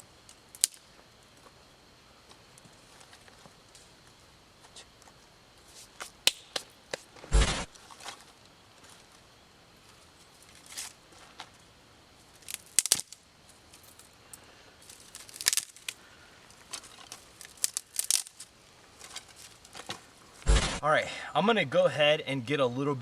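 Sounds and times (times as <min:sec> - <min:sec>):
dry sticks snapping and rustling: 0:00.2 - 0:00.9, 0:05.8 - 0:07.2, 0:10.3 - 0:11.6, 0:12.3 - 0:20.5.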